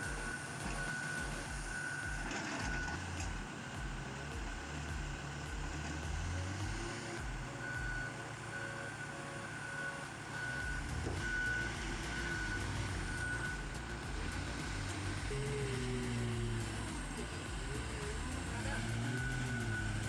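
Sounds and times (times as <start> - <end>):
back-up alarm beeping: 0.0 - 3.0, 7.3 - 13.9, 15.3 - 20.0
heavy machine engine running: 0.0 - 20.0.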